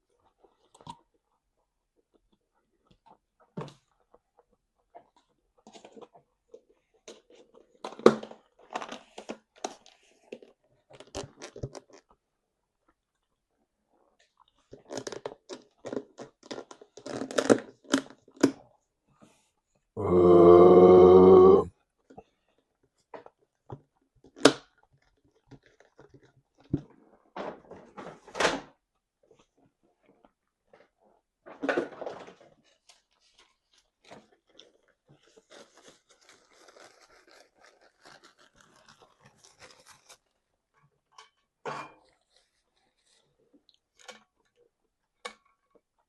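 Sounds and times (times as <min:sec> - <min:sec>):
food crunched and chewed: 0:24.2 - 0:26.7, 0:33.4 - 0:40.3.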